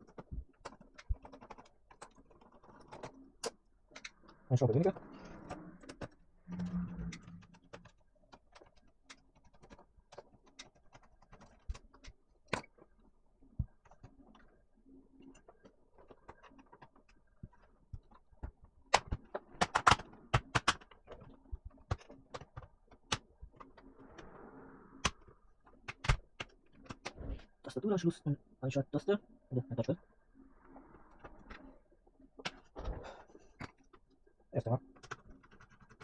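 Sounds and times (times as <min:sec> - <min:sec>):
laptop parts clicking and tapping: 0:00.0 - 0:04.4, 0:07.2 - 0:14.6, 0:15.2 - 0:23.8, 0:25.0 - 0:27.2, 0:34.9 - 0:36.0.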